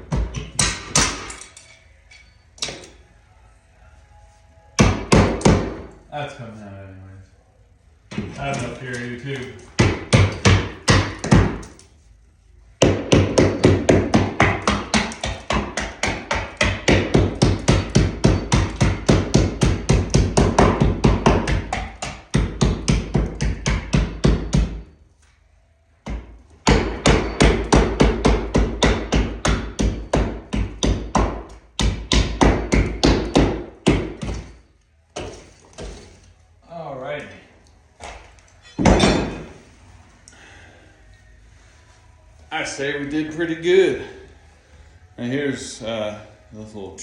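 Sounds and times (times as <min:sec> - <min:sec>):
hammer blows on plaster wall: 0:09.8 - 0:11.7, 0:12.8 - 0:24.9, 0:26.0 - 0:34.6.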